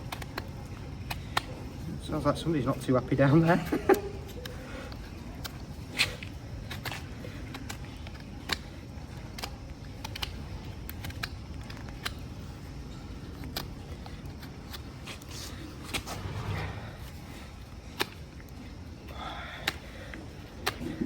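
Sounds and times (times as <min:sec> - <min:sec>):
hoof knife scraping hoof: 0:13.0 - 0:18.2
low steady rumble: 0:15.5 - 0:18.9.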